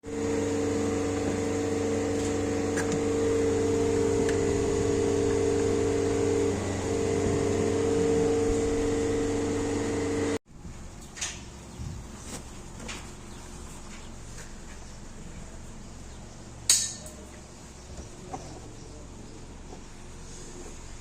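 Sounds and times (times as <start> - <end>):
motor-driven machine humming: 0.0 - 10.4.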